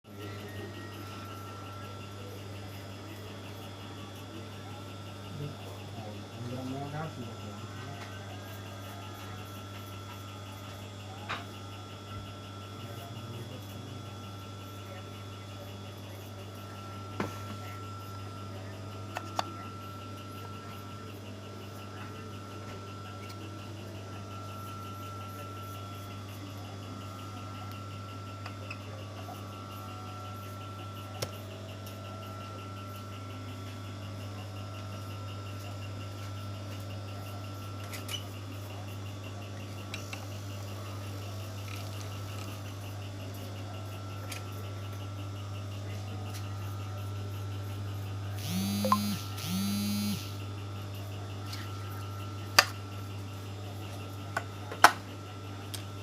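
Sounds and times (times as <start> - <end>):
sewing machine motor humming: 48.4 - 50.4.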